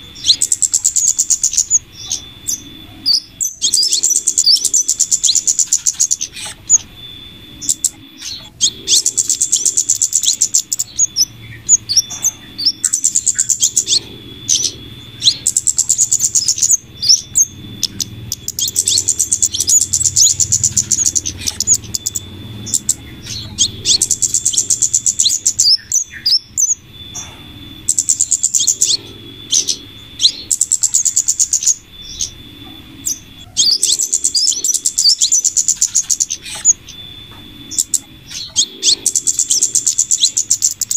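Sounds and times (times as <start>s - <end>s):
rapid chattering bird calls: 0.0s - 40.9s
thin whistle-like tone: 0.0s - 40.9s.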